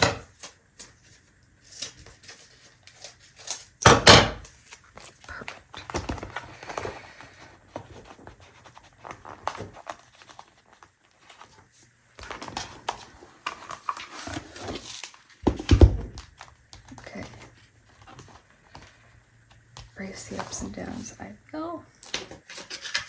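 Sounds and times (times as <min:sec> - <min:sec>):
paper pages rustling: 0:04.4 - 0:21.1.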